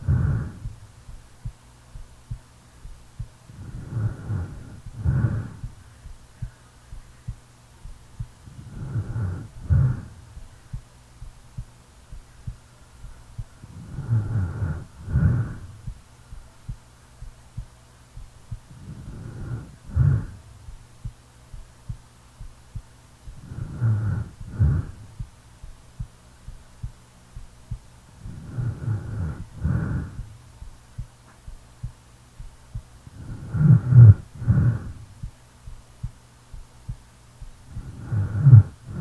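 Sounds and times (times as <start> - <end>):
person snoring: 0.0 - 0.9, 3.5 - 5.9, 8.5 - 10.4, 13.6 - 15.9, 18.8 - 20.7, 23.4 - 25.1, 28.2 - 30.4, 33.1 - 35.1, 37.7 - 39.0
soft heartbeat thumps: 0.0 - 39.0.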